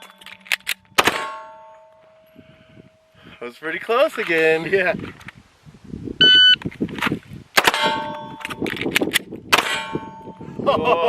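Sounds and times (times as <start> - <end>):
pistol shots: 1.0 - 1.6, 7.6 - 8.3, 9.5 - 9.9
steel targets ringing: 1.0 - 2.4, 7.7 - 8.5, 9.6 - 10.4.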